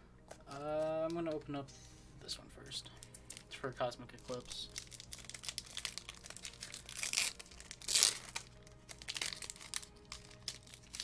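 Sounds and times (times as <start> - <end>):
foil wrapper crinkling: 2.8 - 11.0
foil ripping: 4.2 - 11.0.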